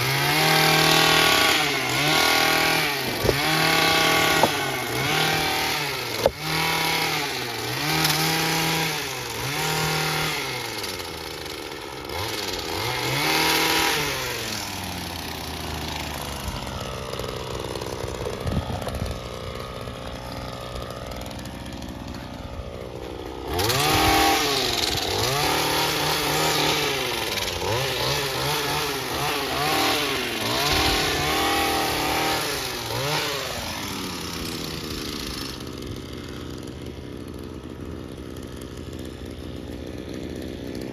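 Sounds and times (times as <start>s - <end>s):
small engine revving: 0.0s - 40.9s.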